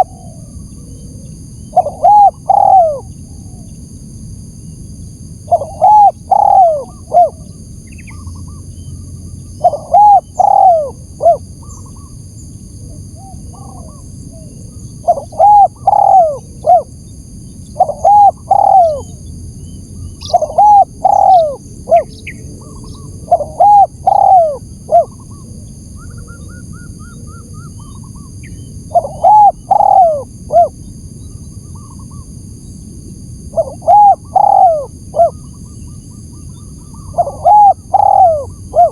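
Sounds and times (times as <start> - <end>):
dove cooing: 0.0 - 3.7, 5.4 - 8.5, 9.6 - 12.1, 12.8 - 17.0, 17.7 - 19.2, 20.2 - 30.8, 33.5 - 35.9, 36.5 - 38.9.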